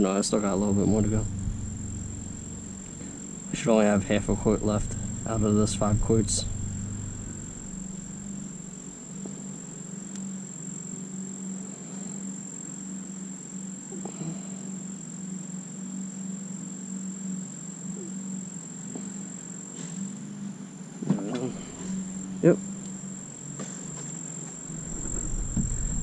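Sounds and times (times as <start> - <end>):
faint low pulsing hum: 0.0 - 9.8, 21.4 - 23.2, 24.6 - 26.0
crickets trilling: 0.0 - 26.0.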